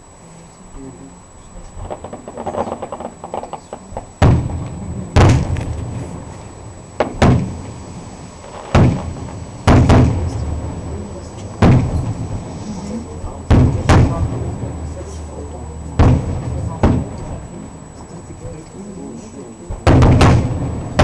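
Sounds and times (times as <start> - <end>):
fireworks crackling: 1.5 - 21.0
firework shell bursts: 1.8 - 10.7, 11.6 - 12.6.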